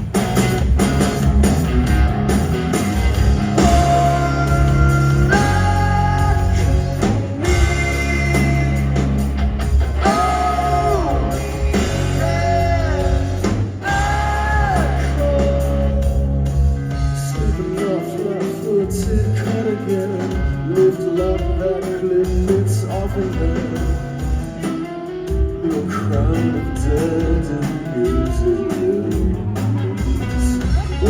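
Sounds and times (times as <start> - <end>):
live rock band playing: 0.0 - 31.0
person singing long notes: 10.0 - 16.2.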